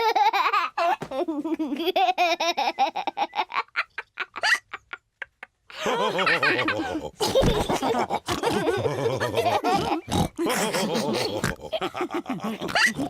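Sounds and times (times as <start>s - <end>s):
cartoon pigs laughing: 1.6s - 13.0s
pig snorts and grunts: 9.8s - 11.7s.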